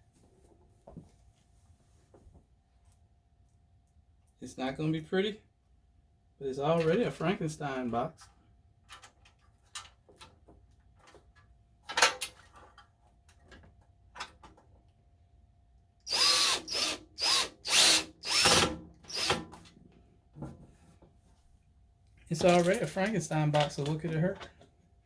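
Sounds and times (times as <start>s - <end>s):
power drill whine: 16.1s - 19.4s.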